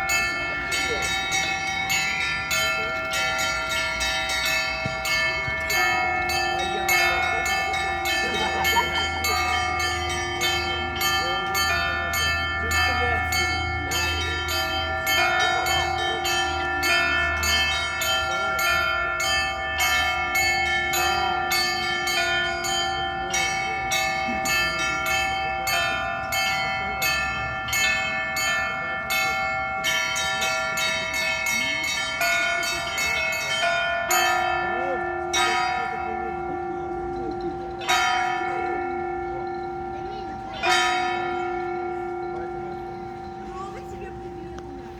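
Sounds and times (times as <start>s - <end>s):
church bells pealing: 0.0s - 44.9s.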